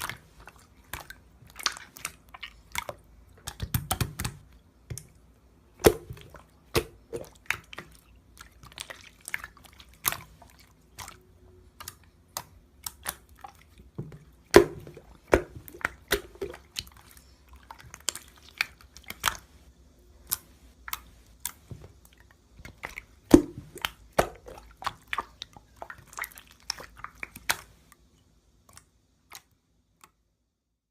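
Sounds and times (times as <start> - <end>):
slime squishing and popping: 0.8 - 5.1, 5.7 - 11.1, 14.5 - 17.1, 22.6 - 27.8.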